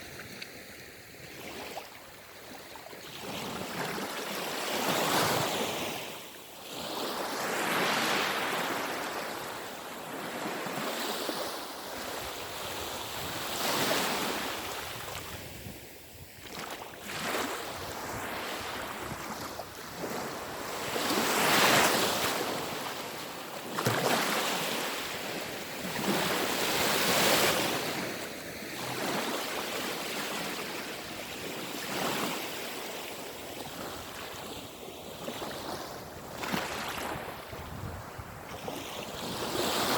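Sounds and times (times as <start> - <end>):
waves washing onto shore: 0.0 - 39.9
wind rumbling on microphone: 37.0 - 39.6.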